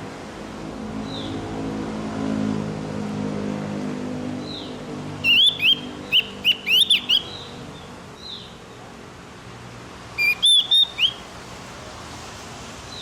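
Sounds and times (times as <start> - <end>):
low engine-like hum: 0.0 - 13.0
bird whistled notes: 5.2 - 7.4, 10.2 - 11.2.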